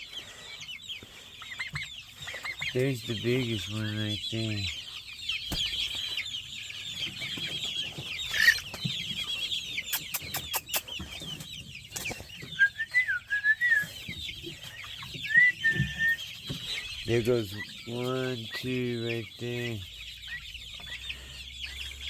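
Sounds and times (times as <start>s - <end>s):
chickens clucking: 0.0s - 22.0s
high chirping birds: 0.0s - 22.0s.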